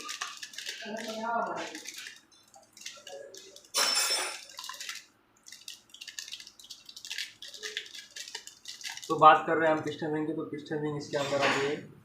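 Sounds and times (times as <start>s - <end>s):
packaging rustling and crinkling: 0.0s - 9.2s.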